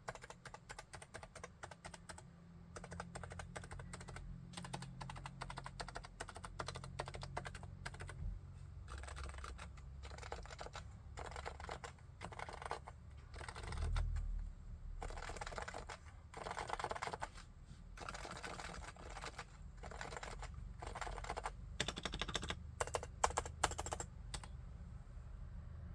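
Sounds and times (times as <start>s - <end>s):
soft muted keyboard typing: 0.0s - 8.2s, 8.8s - 14.4s, 15.0s - 17.4s, 18.0s - 24.6s.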